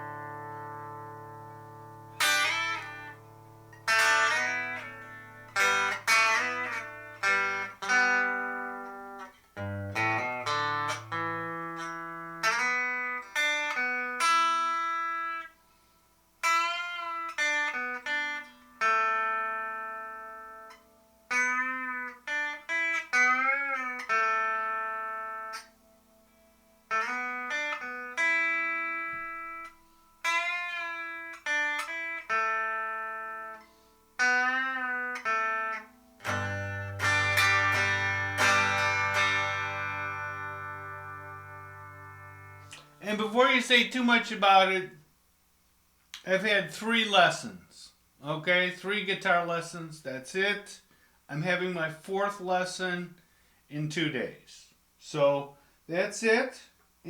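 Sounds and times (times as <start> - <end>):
clean electric guitar playing: 0.0 - 15.5, 16.4 - 44.8.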